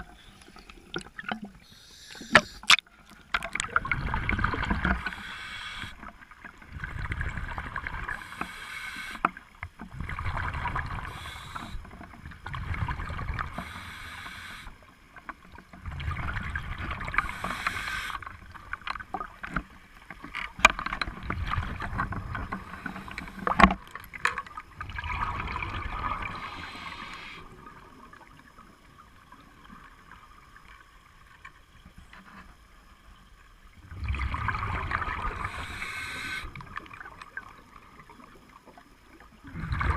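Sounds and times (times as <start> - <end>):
diver breathing through regulator: 1.6 - 2.7, 5.0 - 6.1, 8.1 - 9.2, 11.0 - 11.9, 13.5 - 14.8, 17.2 - 18.3, 22.6 - 23.6, 26.2 - 27.5, 35.3 - 36.6
bubbles rushing and gurgling: 2.2 - 8.4, 9.8 - 14.2, 15.8 - 19.6, 20.6 - 28.7, 33.8 - 38.5, 39.2 - 39.9.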